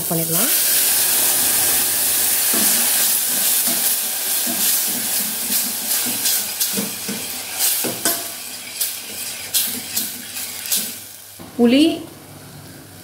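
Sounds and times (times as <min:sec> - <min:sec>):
spice paste sizzling in oil: 0:00.0 - 0:11.4
spoon knocking against pan: 0:06.0 - 0:08.3.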